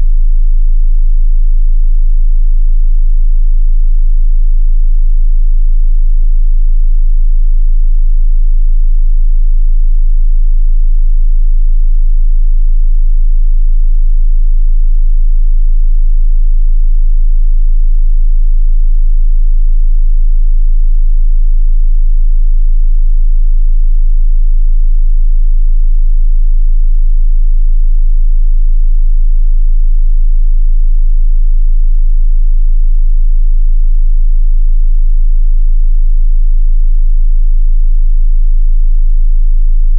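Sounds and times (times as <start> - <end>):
deep bass sine test tone: 0.0 - 39.9.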